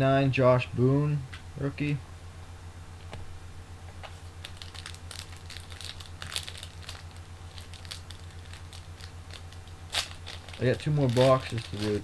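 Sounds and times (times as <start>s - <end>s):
low electrical hum: 0.0s - 12.0s
crinkling of foil wrappers: 4.2s - 12.0s.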